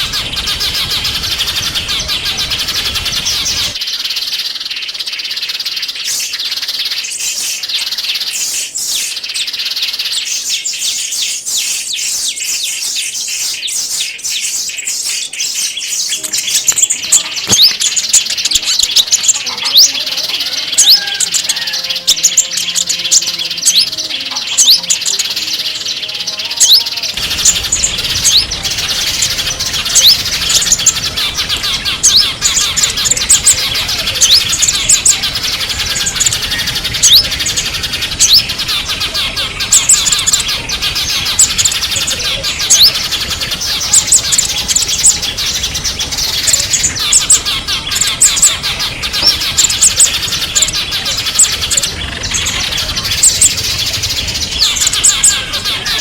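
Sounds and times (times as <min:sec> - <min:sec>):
songbirds chirping: 0:00.0 - 0:56.0
low steady background rumble: 0:27.2 - 0:55.4.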